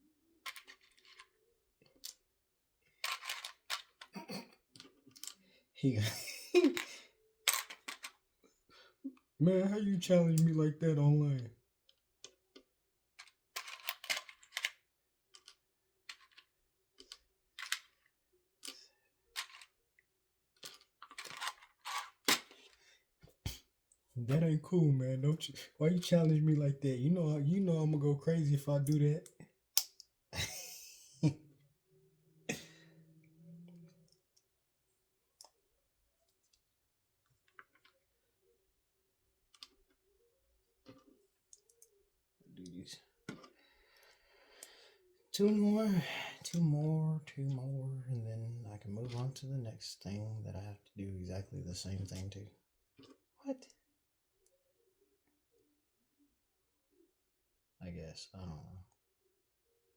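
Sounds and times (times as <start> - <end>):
plastic bricks clicking: 13.2 - 18.0, 19.4 - 19.7.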